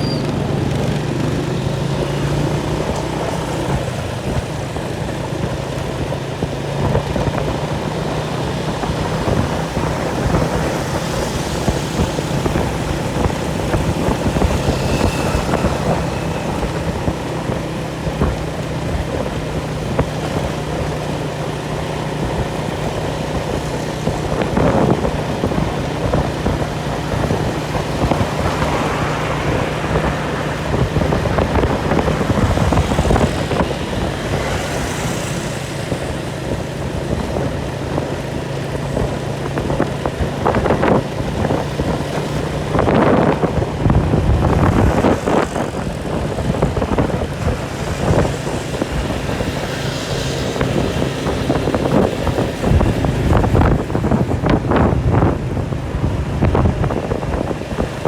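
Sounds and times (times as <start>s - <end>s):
engine running: 0.0s - 58.0s
rush of wind: 0.0s - 58.0s.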